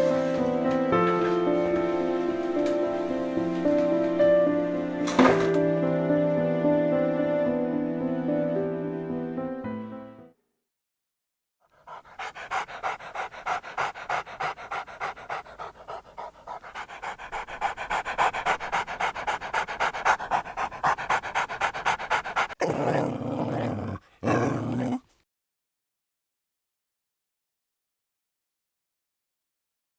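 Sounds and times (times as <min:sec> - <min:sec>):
dog panting: 0:11.7 - 0:23.0.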